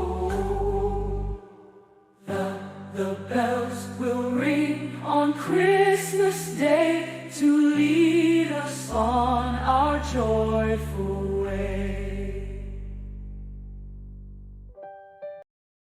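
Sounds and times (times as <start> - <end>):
sustained chords and bass: 0.0 - 1.4, 9.0 - 14.7.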